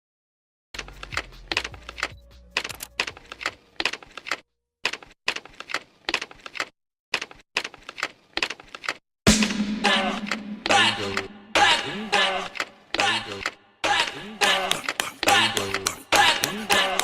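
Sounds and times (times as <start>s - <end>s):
sharp clicks and clacks: 0.8s - 9.0s, 14.4s - 17.0s.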